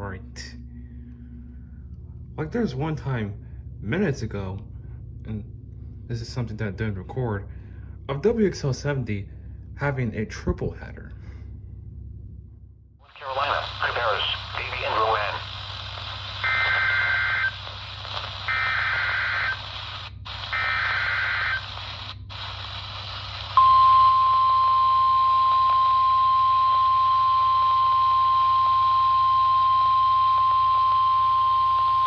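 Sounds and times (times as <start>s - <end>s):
faint radio hiss: 13.1s - 23.6s
steady warning alarm tone: 15.2s - 32.0s.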